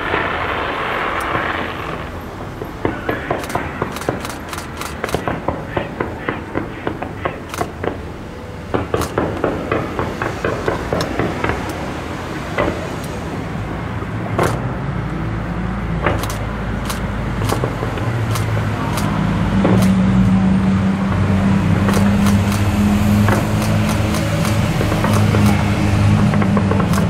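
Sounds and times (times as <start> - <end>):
fireworks bangs: 0.0 - 13.6, 23.2 - 27.0
fireworks crackling: 0.0 - 14.7, 21.9 - 27.0.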